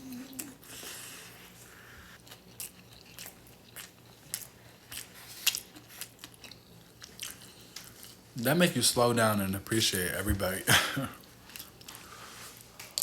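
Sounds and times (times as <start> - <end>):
faint steady hum: 0.0 - 13.0
person chewing noodles: 0.3 - 8.2, 11.2 - 13.0.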